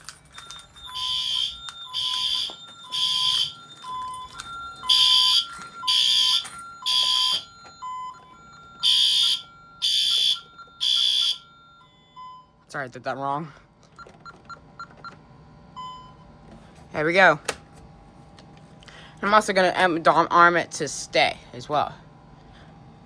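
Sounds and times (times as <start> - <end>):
alarm horn pulses: 1.0 - 11.5.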